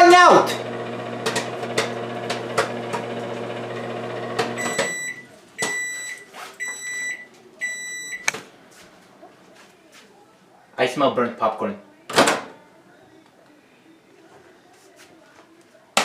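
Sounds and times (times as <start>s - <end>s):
popcorn popping: 0.0s - 5.0s
microwave oven humming: 0.0s - 5.2s
microwave beeping: 0.0s - 8.3s.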